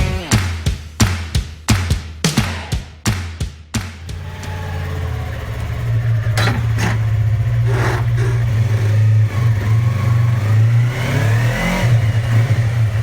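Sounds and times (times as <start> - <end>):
motorcycle engine running: 4.1 - 13.0.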